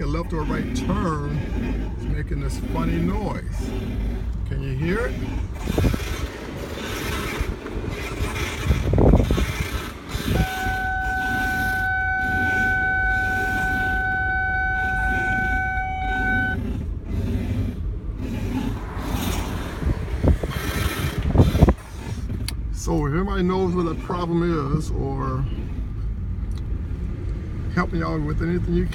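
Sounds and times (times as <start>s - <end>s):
car steering squeal: 0.0s - 22.6s
car engine rumble: 0.0s - 28.9s.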